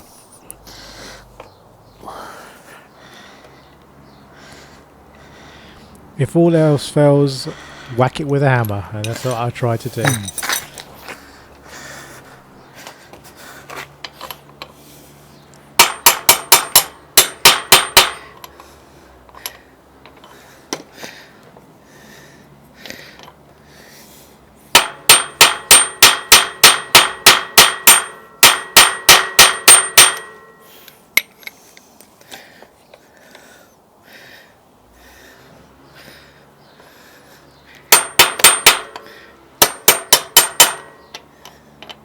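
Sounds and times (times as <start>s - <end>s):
hammer striking metal: 15.8s - 18.4s, 24.7s - 30.6s, 37.9s - 41.0s.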